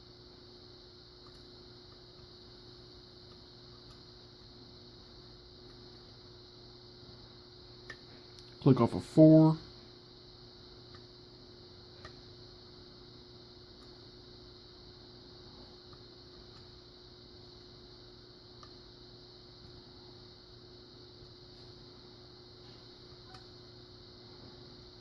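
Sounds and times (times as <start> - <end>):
steady hum: 0.0 - 25.0.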